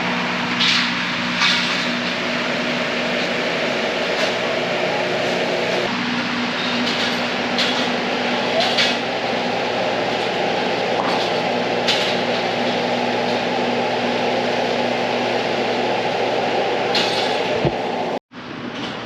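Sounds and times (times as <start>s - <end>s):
mechanical low hum: 0.0s - 19.0s.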